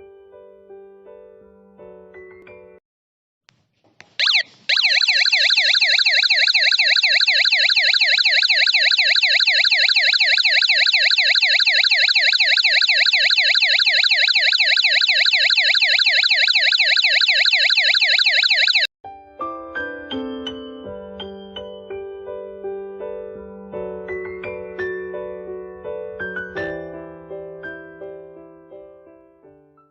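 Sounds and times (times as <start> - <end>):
electronic siren warbling: 4.2 - 18.9.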